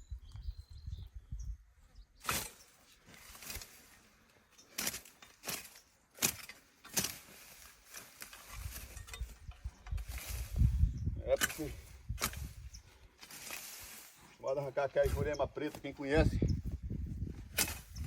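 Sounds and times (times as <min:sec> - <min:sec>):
brush hook swishing through weeds: 0:02.2 - 0:14.3, 0:17.3 - 0:18.0.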